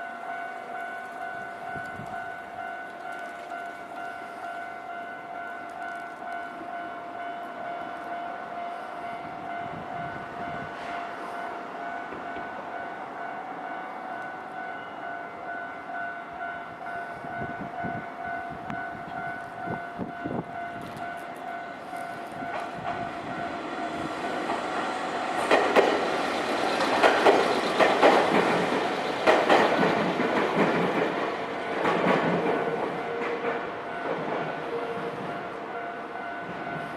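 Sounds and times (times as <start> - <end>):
train wheels clattering over joints: 24.2 - 34.6.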